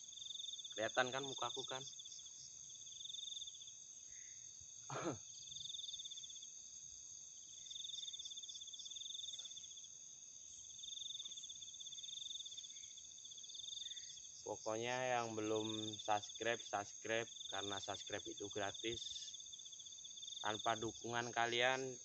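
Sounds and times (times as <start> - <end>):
crickets chirring: 0.0 - 22.0.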